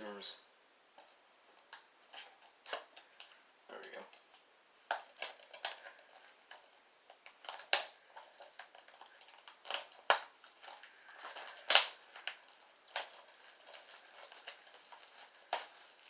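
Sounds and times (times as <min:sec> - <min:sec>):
plastic wrap crinkling: 0:01.0 - 0:16.0.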